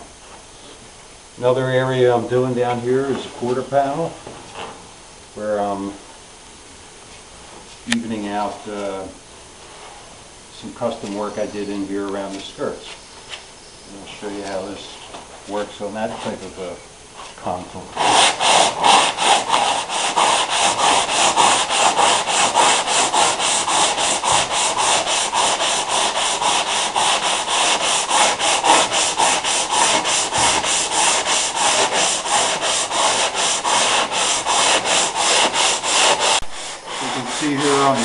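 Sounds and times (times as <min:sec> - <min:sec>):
hand sanding with sandpaper: 0:14.1 - 0:38.0.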